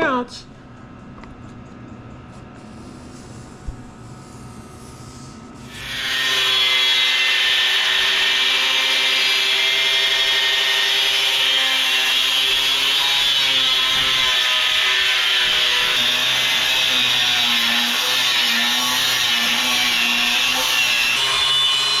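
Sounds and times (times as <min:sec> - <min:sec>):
angle grinder cutting steel: 0:05.6 - 0:22.0.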